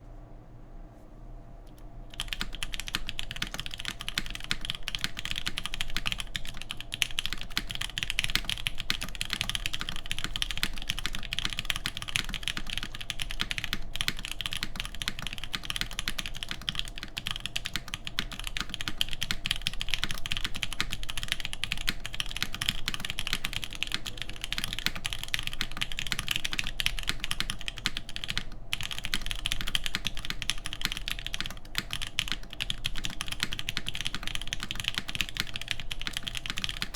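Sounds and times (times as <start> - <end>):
fast typing on mechanical keyboard: 2.1 - 36.9.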